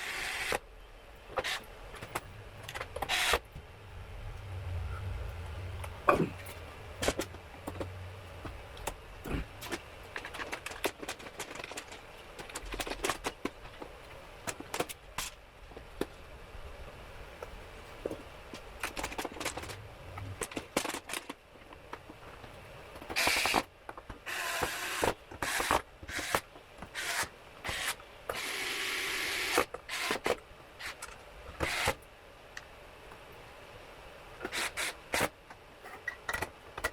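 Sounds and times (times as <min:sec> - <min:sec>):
hands and tools clicking on console: 0:07.0 - 0:15.3.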